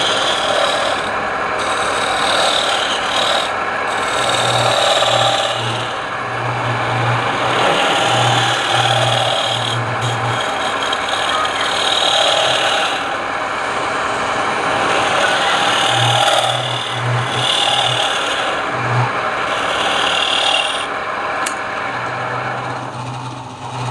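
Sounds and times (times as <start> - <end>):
lathe tool scraping wood: 0.0 - 23.9
low lathe hum: 0.0 - 23.9.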